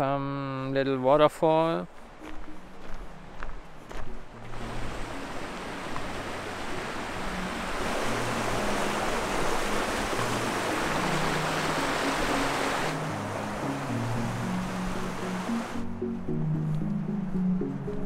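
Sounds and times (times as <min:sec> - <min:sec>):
background music low notes: 0:00.0 - 0:18.0
rushing water roar: 0:02.0 - 0:15.9.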